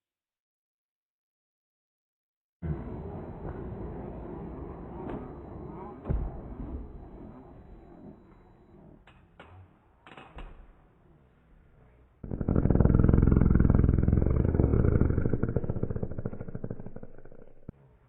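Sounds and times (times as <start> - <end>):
slowed low fluttering fart: 12.2 - 17.8.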